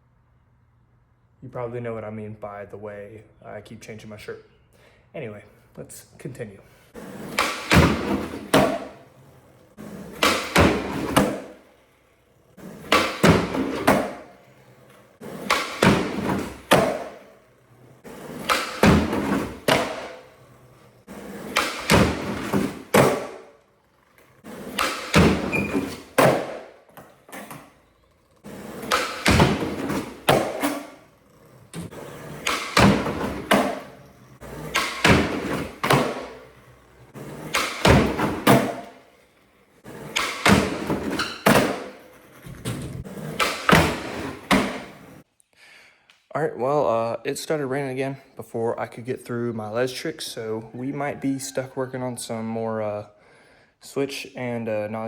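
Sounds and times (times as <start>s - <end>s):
skateboard wheels rolling: 6.7s - 45.3s
skateboard deck popping: 7.0s - 39.2s, 39.8s - 45.2s.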